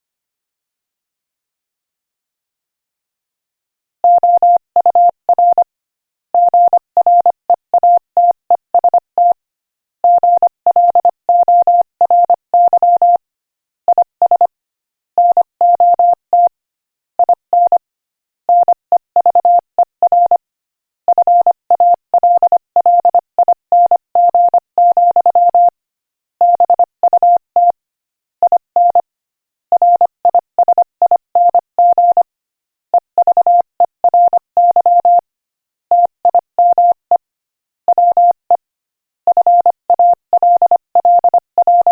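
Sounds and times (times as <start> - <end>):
morse code beeps: 4.1 - 5.6, 6.4 - 9.4, 10.1 - 13.2, 13.9 - 14.6, 15.2 - 16.6, 17.2 - 17.9, 18.5 - 20.4, 21.1 - 25.8, 26.4 - 27.8, 28.4 - 29.1, 29.8 - 32.3, 33.0 - 35.2, 35.9 - 37.3, 37.9 - 38.6, 39.3 - 41.9.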